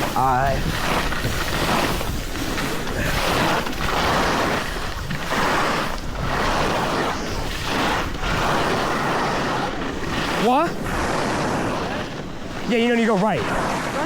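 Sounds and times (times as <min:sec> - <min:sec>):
skis hissing across snow: 0:00.0 - 0:14.0
wind rushing over microphone: 0:00.0 - 0:14.0.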